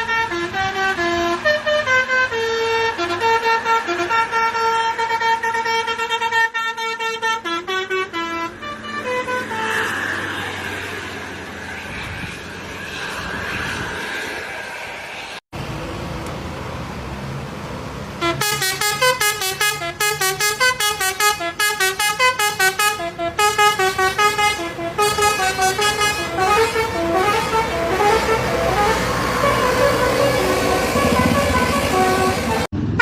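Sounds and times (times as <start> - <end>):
musical air horn melody: 0.0 - 10.0, 18.2 - 33.0
bus engine hum: 0.0 - 33.0.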